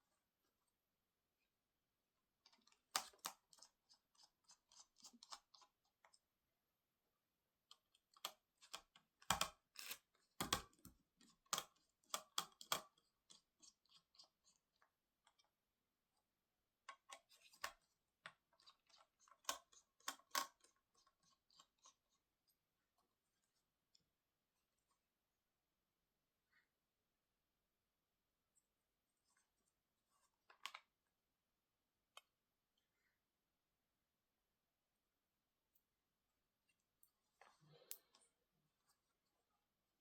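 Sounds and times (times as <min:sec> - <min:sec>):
small clicks and crackles on laptop: 0:02.4 - 0:06.2, 0:07.6 - 0:24.1, 0:29.2 - 0:31.2.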